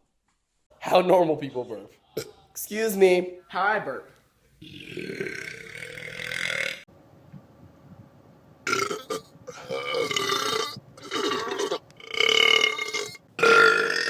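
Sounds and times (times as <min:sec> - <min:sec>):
man belching: 0:04.6 - 0:06.8, 0:08.7 - 0:14.0.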